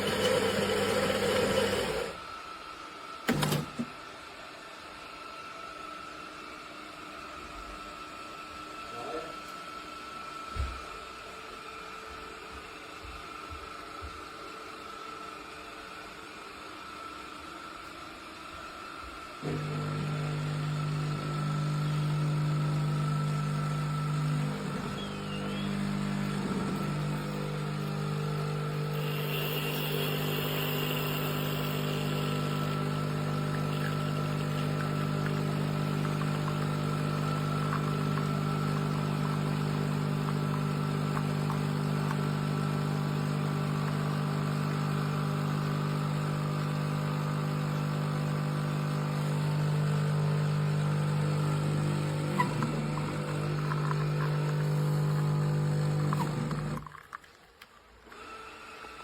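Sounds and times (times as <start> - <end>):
espresso machine humming: 0.0 - 2.4, 19.4 - 57.1.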